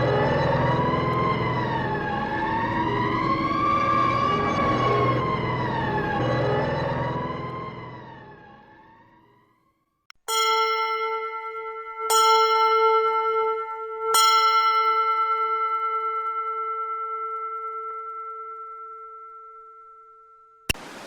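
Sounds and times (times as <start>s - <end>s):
bell ringing: 10.3s - 20.6s.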